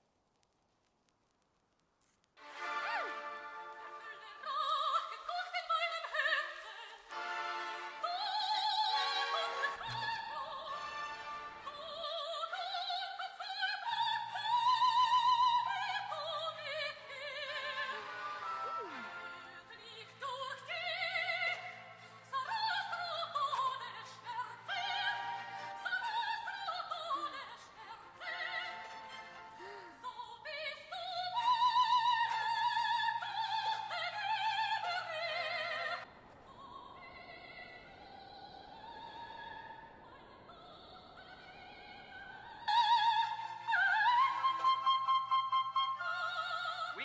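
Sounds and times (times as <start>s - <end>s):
orchestral accompaniment: 2.4s - 4.5s
operatic singing: 2.4s - 47.0s.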